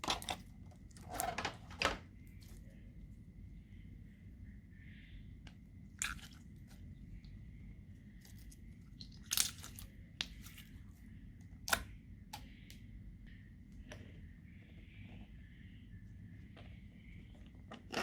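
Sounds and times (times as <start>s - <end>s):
faint high whine: 1.8s - 18.0s.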